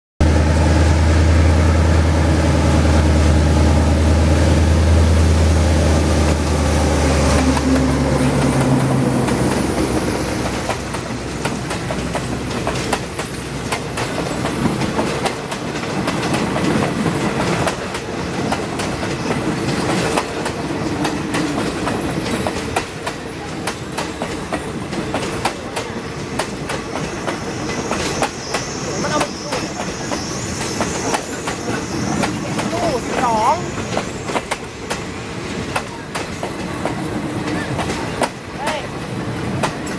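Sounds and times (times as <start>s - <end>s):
locomotive engine drone: 0.2s - 14.7s
train wheels clacking on rail joints: 7.2s - 39.9s.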